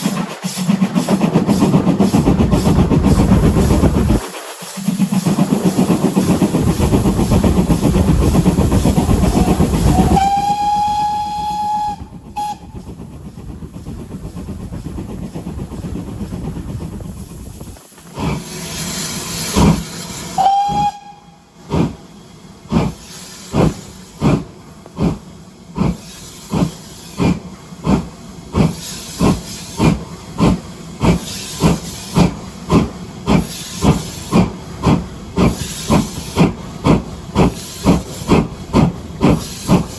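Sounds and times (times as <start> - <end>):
locomotive exhaust beats: 0.0 - 18.7
steam locomotive hissing steam: 0.0 - 39.9
steam whistle: 9.0 - 12.8, 20.4 - 21.4.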